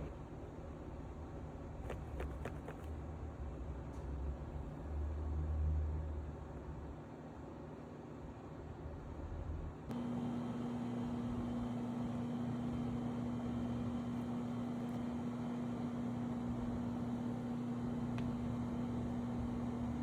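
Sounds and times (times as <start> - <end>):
electric motor humming: 9.9 - 20.0.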